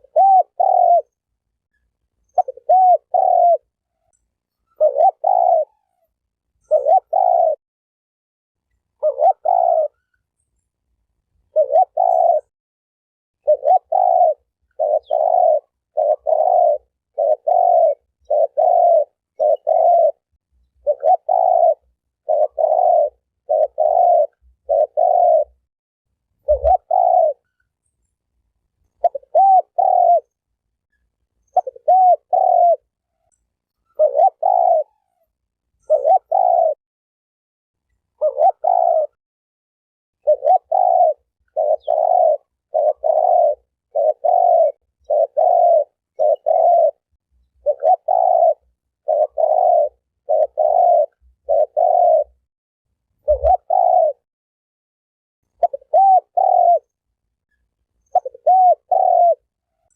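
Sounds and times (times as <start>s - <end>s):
dove cooing: 0.0s - 1.2s, 2.2s - 7.6s, 8.9s - 10.2s, 11.5s - 12.5s, 13.4s - 25.6s, 26.4s - 27.6s, 28.9s - 30.4s, 31.4s - 36.8s, 38.1s - 39.2s, 40.2s - 52.4s, 53.2s - 54.2s, 55.5s - 57.0s, 58.0s - 59.9s.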